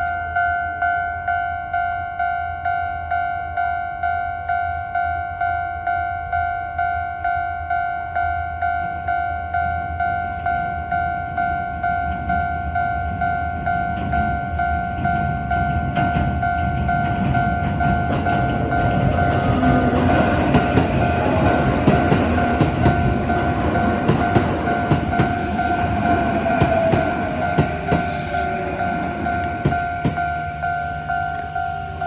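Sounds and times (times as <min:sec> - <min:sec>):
train wheels clacking on rails: 0:11.4 - 0:32.0
level crossing bell ringing: 0:16.6 - 0:32.0.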